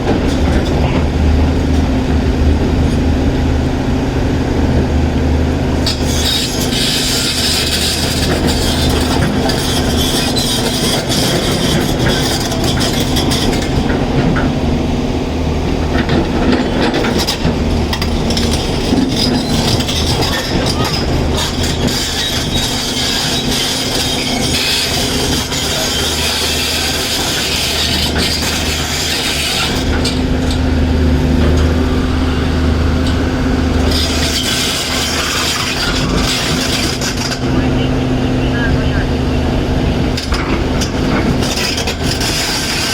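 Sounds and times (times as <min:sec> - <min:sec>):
excavator diesel engine running: 0:00.0 - 0:42.9
rock and steel scraping and clattering: 0:05.7 - 0:14.8, 0:15.7 - 0:37.6, 0:40.0 - 0:42.9.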